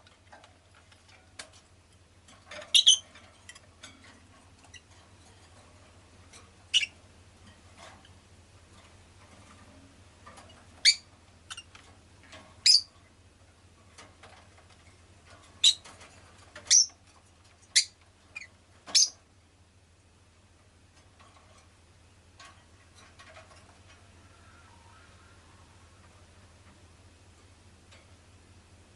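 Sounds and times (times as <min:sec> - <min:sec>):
low steady hum: 0:00.0 - 0:28.9
lovebird chirping: 0:02.7 - 0:03.0, 0:06.7 - 0:07.0, 0:10.8 - 0:11.7, 0:12.6 - 0:12.9, 0:15.6 - 0:15.8, 0:17.7 - 0:19.2.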